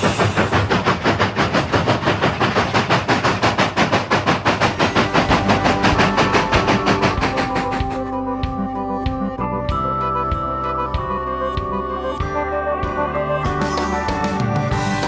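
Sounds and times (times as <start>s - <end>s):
steam locomotive chuffing: 0.0s - 8.6s
music: 4.8s - 15.0s.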